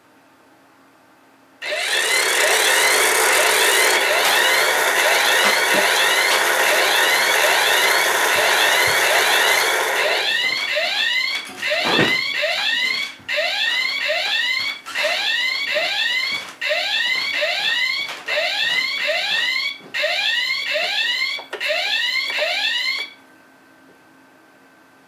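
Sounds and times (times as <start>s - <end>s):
propeller motor whirring: 1.6s - 10.4s
rising electronic alarm chirps: 1.6s - 23.2s.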